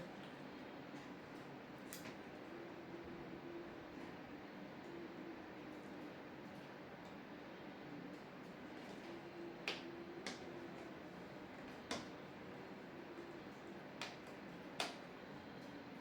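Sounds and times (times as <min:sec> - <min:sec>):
faint steady hum: 0:00.0 - 0:16.0
sharp clicks of hands working: 0:11.9 - 0:12.1, 0:14.0 - 0:15.0.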